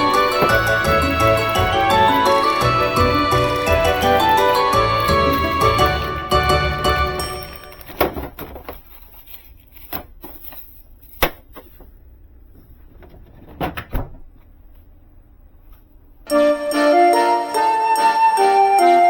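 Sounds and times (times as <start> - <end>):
background music: 0.0 - 8.1, 16.3 - 19.0
household items knocking: 0.0 - 8.8.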